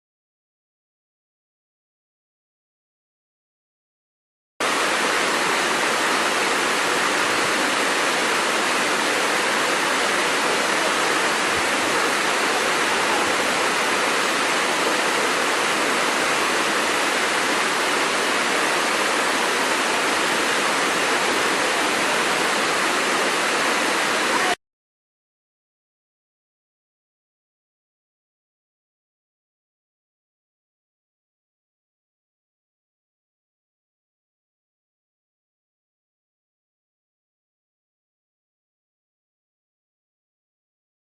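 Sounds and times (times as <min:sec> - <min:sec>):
waterfall roaring: 0:04.6 - 0:24.6.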